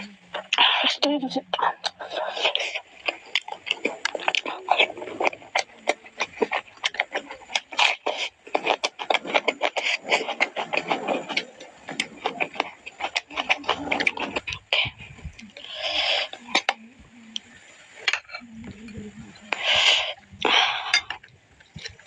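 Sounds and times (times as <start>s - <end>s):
chewing with clicks and smacks: 0.0s - 22.0s.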